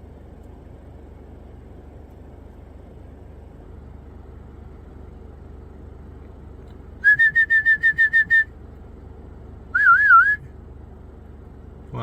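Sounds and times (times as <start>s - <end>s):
person whistling short notes: 7.0s - 8.5s, 9.8s - 10.4s.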